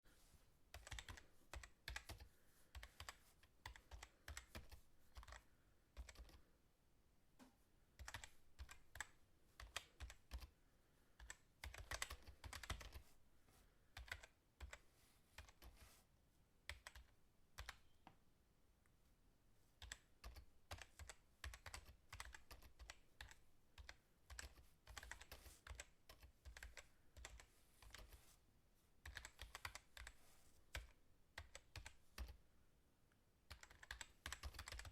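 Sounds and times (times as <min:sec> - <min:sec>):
fast typing on keyboard: 0:00.7 - 0:06.4, 0:08.0 - 0:10.5, 0:11.2 - 0:13.1, 0:14.0 - 0:14.8, 0:19.8 - 0:28.2, 0:29.0 - 0:32.4, 0:33.5 - 0:34.9.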